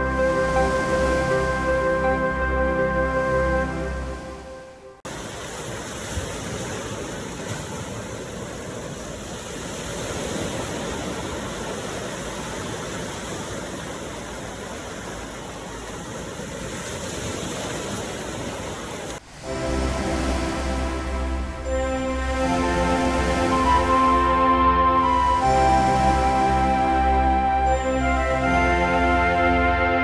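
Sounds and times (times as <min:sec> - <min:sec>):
music: 0:00.0 - 0:05.0, 0:19.4 - 0:30.0
ocean surf rushing: 0:00.0 - 0:30.0.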